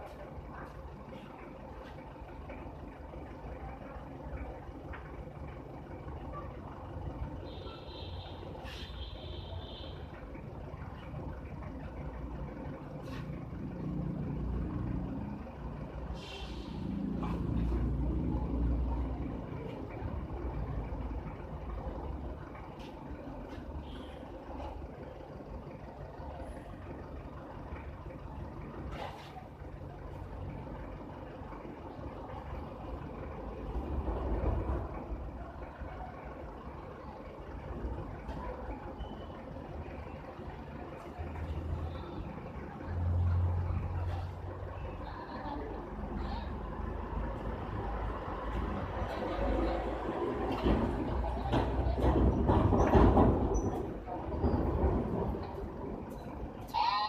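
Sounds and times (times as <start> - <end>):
low engine rumble: 0.0 - 57.0
brief hiss: 8.6 - 9.0, 16.2 - 16.8.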